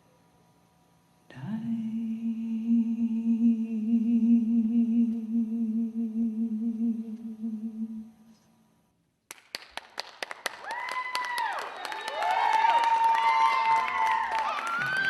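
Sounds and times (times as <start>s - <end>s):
audience clapping: 9.3s - 15.0s
high cheers: 10.5s - 15.0s.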